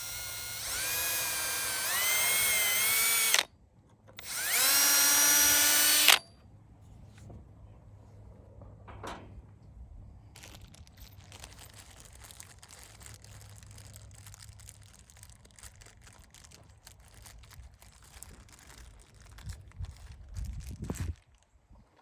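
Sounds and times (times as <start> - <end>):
rustling and crackling: 10.3 - 22.0.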